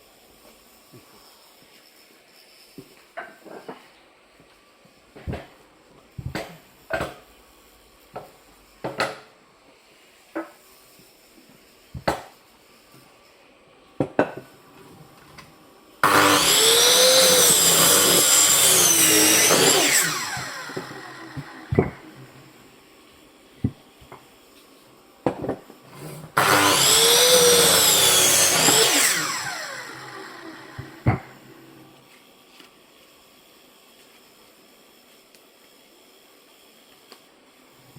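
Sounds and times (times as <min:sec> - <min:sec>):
electric saw cutting wood: 0:16.0 - 0:22.7, 0:26.1 - 0:32.0.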